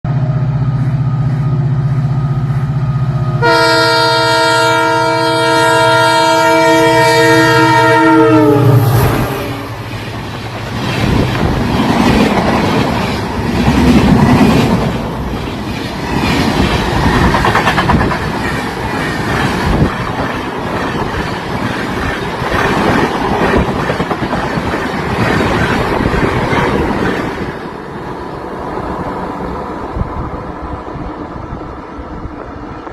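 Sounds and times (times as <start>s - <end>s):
diesel locomotive engine drone: 0.1s - 32.9s
train horn: 3.4s - 9.9s
train wheels clattering over rail joints: 10.0s - 27.7s.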